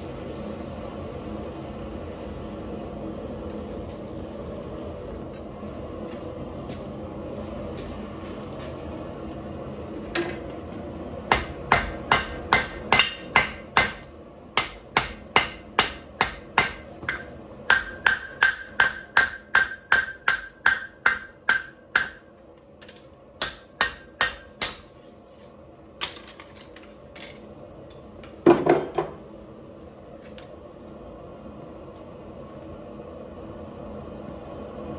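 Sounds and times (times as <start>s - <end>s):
hammer striking steel on anvil: 11.3s - 22.4s, 23.4s - 25.1s, 26.0s - 26.9s.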